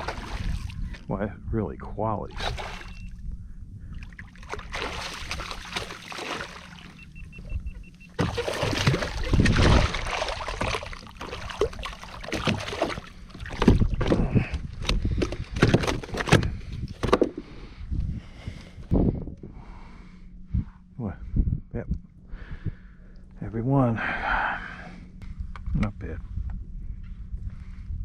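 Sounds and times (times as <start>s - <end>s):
water splashes: 0.0s - 1.0s, 2.3s - 3.0s, 4.0s - 7.1s, 8.2s - 14.2s.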